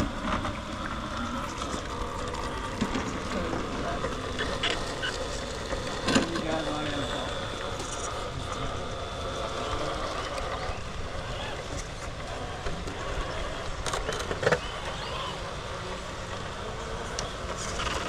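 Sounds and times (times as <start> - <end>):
electric motor and gears whining: 0.0 - 18.0
rough rumble: 0.0 - 18.0.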